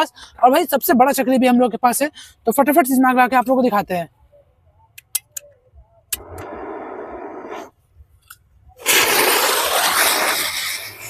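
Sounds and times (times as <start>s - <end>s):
firework hissing: 6.2s - 7.7s, 8.8s - 11.0s.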